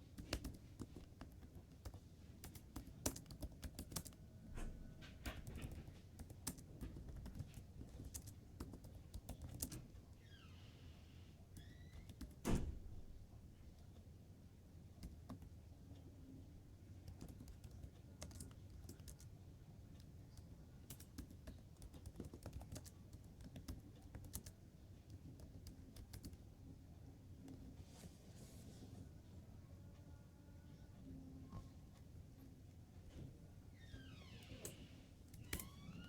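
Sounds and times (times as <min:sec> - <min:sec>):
keyboard typing clicks: 0:00.1 - 0:04.2, 0:05.2 - 0:09.9, 0:11.6 - 0:12.4, 0:17.0 - 0:19.3, 0:20.0 - 0:26.4.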